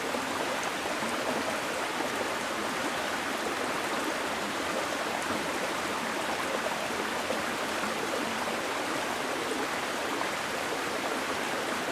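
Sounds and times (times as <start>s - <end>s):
stream flowing over rocks: 0.0s - 11.9s.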